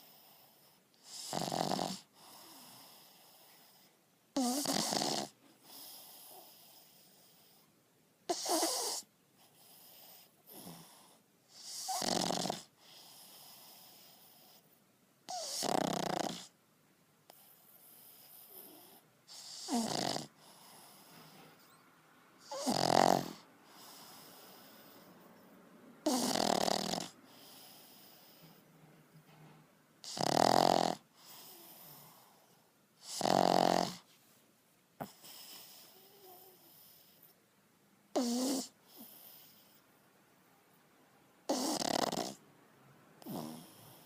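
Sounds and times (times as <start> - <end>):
dog breathing: 0.0 - 7.7, 8.3 - 14.7, 17.3 - 21.8, 22.4 - 25.3, 26.0 - 28.7, 30.0 - 34.2, 35.0 - 37.4, 38.2 - 39.8
dog snoring: 0.0 - 7.7, 8.3 - 14.7, 15.3 - 16.6, 17.3 - 21.8, 22.4 - 28.6, 30.0 - 34.1, 35.0 - 37.4, 38.1 - 39.8, 41.5 - 42.4, 43.2 - 44.0.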